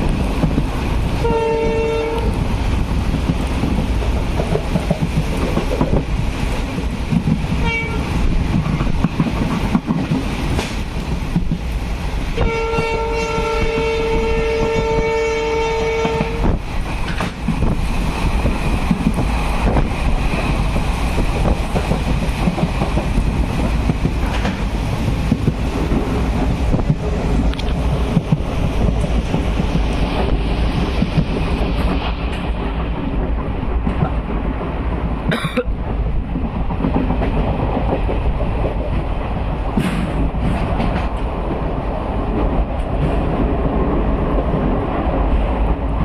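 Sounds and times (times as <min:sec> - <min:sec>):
train rumbling on rails: 0:00.0 - 0:46.0
wheels clacking over rail joints: 0:00.0 - 0:46.0
train horn: 0:01.2 - 0:02.4, 0:07.6 - 0:08.2, 0:12.4 - 0:16.6.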